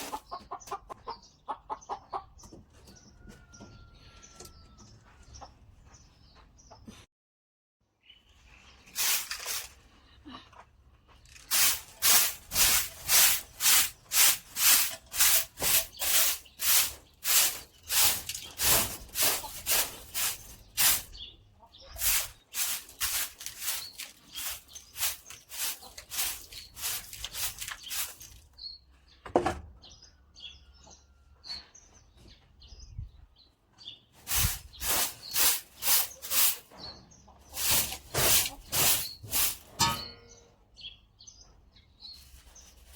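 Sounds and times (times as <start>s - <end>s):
broom sweeping: 8.8s - 9.8s, 11.4s - 21.2s, 21.9s - 28.4s, 34.2s - 36.7s, 37.5s - 39.8s.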